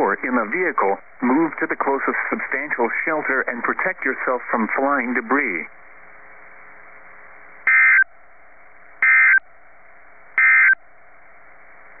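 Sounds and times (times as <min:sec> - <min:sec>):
steady hiss: 0:00.0 - 0:12.0
digital data tone bursts: 0:07.7 - 0:08.1, 0:09.0 - 0:09.4, 0:10.4 - 0:10.8.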